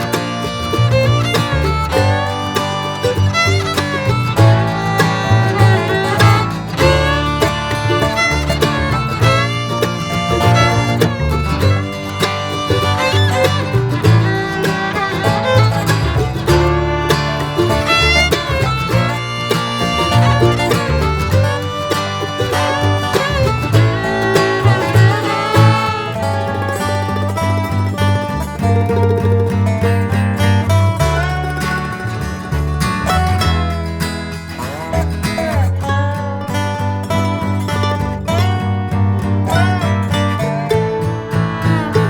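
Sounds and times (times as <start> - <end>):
lively string instrument tune: 0.0 - 42.0.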